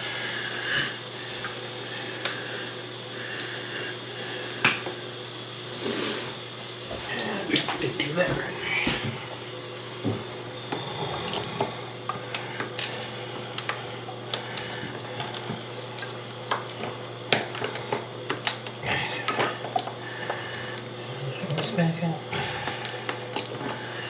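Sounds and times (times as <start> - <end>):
steady low hum: 0.0 - 24.0
water dripping and trickling: 1.2 - 2.6, 6.4 - 23.9.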